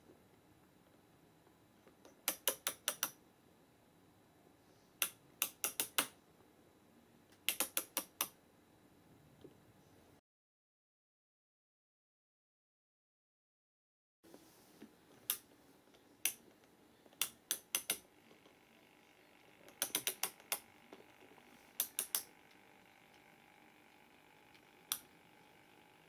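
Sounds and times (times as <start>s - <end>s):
sharp mechanical clicks: 2.0s - 3.2s, 5.0s - 6.2s, 7.4s - 8.4s, 17.2s - 18.1s, 19.4s - 25.8s.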